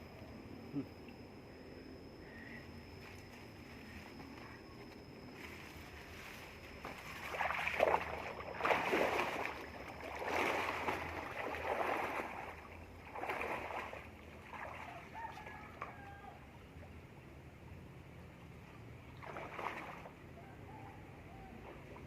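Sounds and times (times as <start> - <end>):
water splashing and sloshing: 5.3 - 17.2, 18.7 - 20.3.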